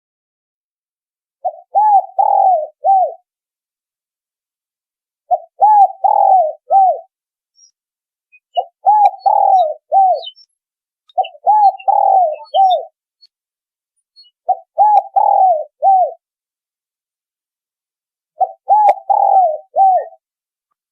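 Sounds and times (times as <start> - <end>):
small birds chirping: 1.4 - 3.2, 5.3 - 16.2, 18.4 - 20.2
dove cooing: 1.4 - 3.3, 5.3 - 7.1, 8.5 - 10.4, 11.1 - 13.0, 14.4 - 16.2, 18.4 - 20.2.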